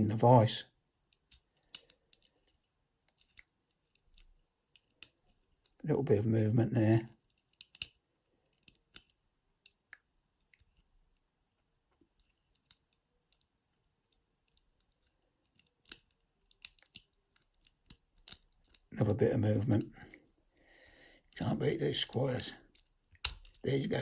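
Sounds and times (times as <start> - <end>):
metallic lock picking clicks: 1.1 - 2.5, 3.1 - 5.8, 7.5 - 9.8, 14.5 - 18.9, 22.1 - 23.6.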